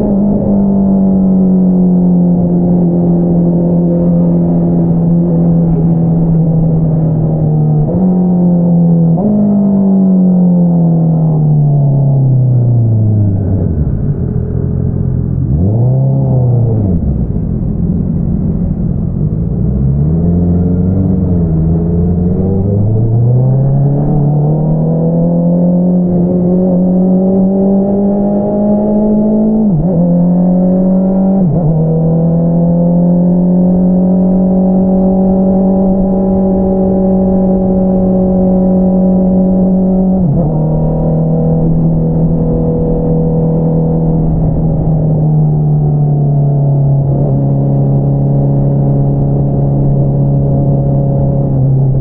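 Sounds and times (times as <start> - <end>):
motorcycle engine revving: 12.6 - 52.0.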